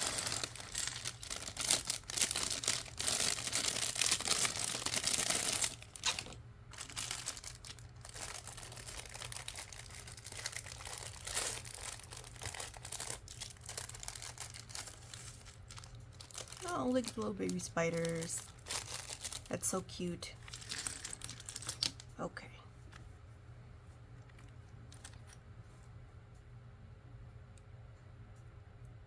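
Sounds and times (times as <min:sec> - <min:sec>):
plastic bags crinkling: 0:00.0 - 0:22.0.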